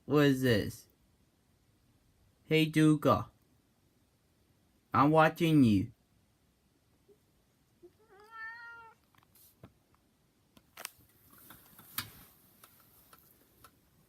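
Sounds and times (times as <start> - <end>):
cat meowing: 7.8 - 9.1.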